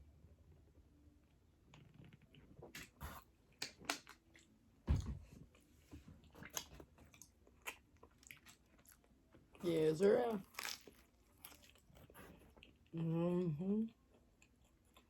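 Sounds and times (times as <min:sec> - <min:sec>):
dull thump: 0:04.9 - 0:05.3
chewing and crunching: 0:05.4 - 0:13.0, 0:13.9 - 0:15.0.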